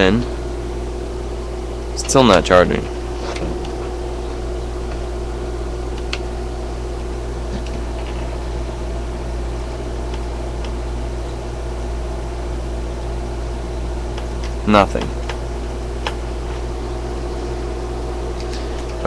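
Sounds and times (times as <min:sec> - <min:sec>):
electrical hum with faint buzz: 0:00.0 - 0:19.0.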